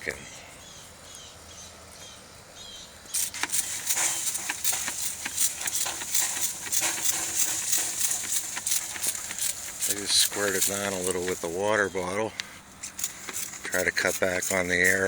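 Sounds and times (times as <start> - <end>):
spray bottle squirting water: 3.1 - 15.0.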